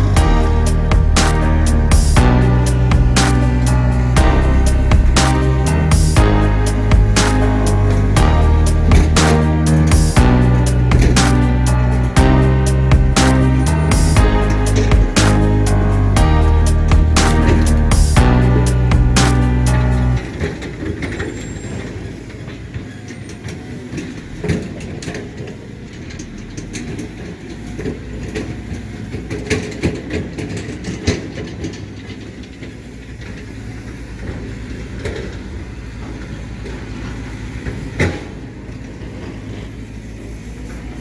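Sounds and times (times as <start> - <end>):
diesel engine rumbling: 0.0 - 20.4.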